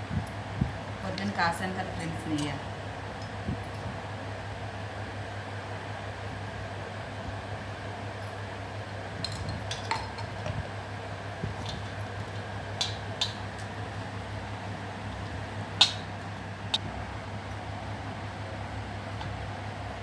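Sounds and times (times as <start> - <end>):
steady low hum: 0.0 - 20.0
dishes and spoon clinking: 9.2 - 10.5.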